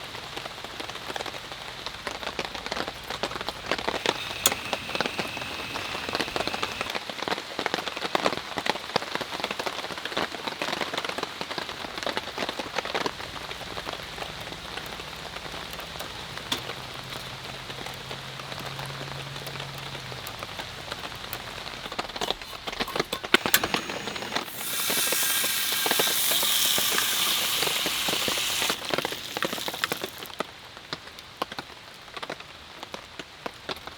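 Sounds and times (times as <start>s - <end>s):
rain pattering: 0.0s - 33.9s
loud steady hiss: 3.4s - 7.0s, 21.4s - 30.4s.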